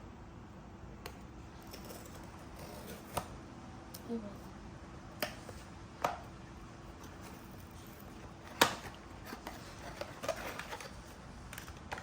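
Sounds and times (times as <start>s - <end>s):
soft packaging rustling: 6.9s - 12.0s.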